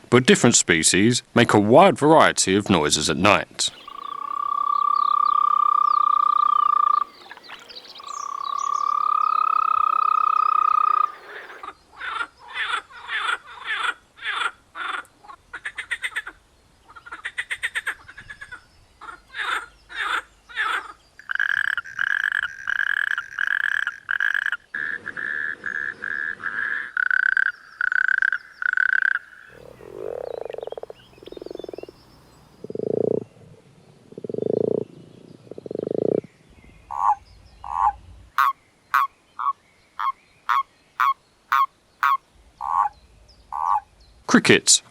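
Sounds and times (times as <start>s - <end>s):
deep toad croaks: 3.7s - 11.6s, 19.4s - 36.3s, 36.9s - 44.0s
high-pitched frog calls: 3.7s - 11.6s, 20.1s - 33.3s, 34.1s - 34.8s, 35.5s - 36.2s, 36.9s - 43.9s
rapid pulsed frog calls: 3.7s - 11.6s, 21.2s - 36.3s, 36.9s - 44.3s.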